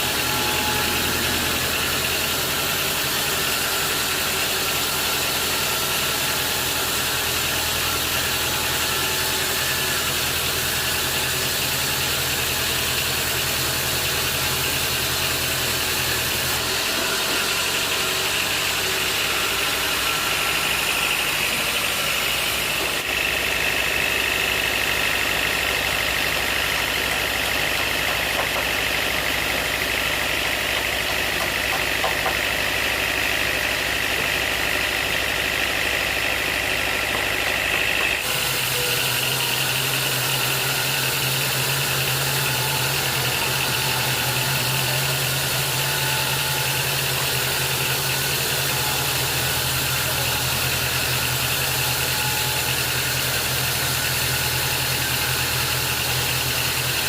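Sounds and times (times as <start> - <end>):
high machine whine: 0.0 - 57.0
sawmill machinery drone: 0.0 - 57.0.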